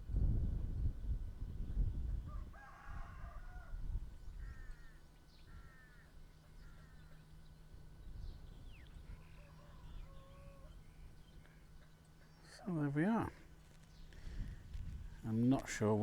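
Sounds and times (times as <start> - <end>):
wind rumble on microphone: 0.0 - 4.9, 7.8 - 11.4, 14.0 - 16.0
rooster crowing: 2.3 - 3.9, 9.1 - 10.8.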